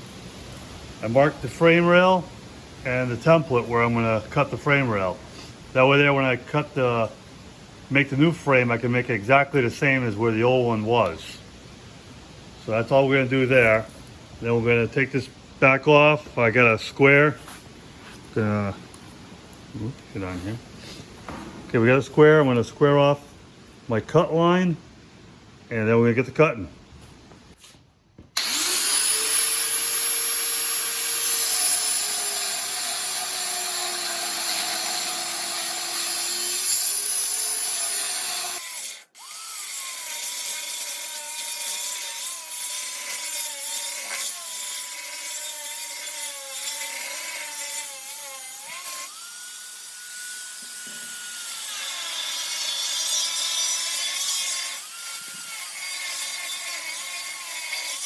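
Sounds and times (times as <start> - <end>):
angle grinder cutting steel: 28.4 - 58.0.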